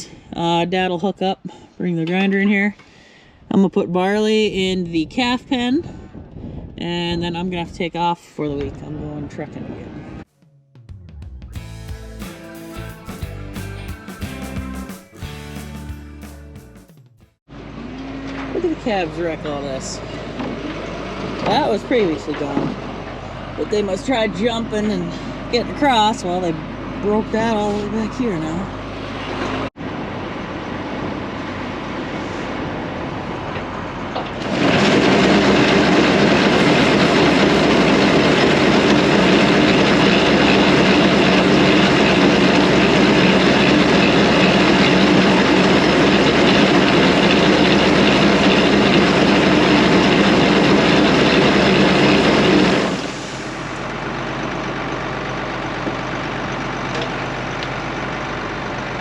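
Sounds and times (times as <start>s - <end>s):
tractor engine running: 18.6s - 59.0s.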